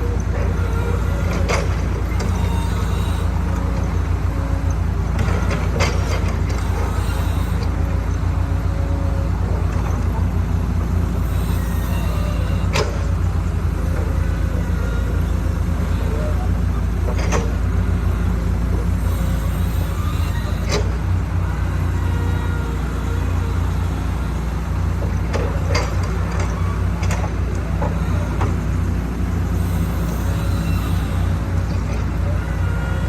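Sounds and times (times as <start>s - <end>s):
diesel engine droning: 0.0s - 33.0s.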